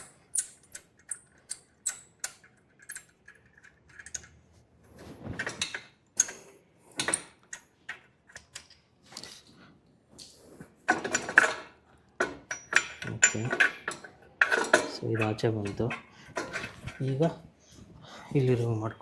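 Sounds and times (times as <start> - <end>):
scraping rattles of metal: 12.4 - 17.4.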